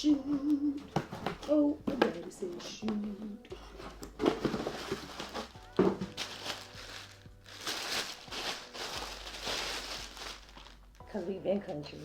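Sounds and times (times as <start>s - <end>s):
packaging rustling and crinkling: 3.6s - 12.0s.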